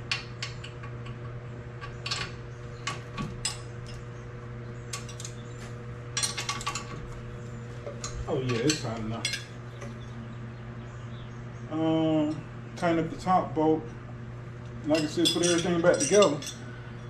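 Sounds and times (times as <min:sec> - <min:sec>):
steady low hum: 0:00.0 - 0:17.0
hand tools clinking on metal: 0:08.0 - 0:09.5, 0:14.8 - 0:16.7.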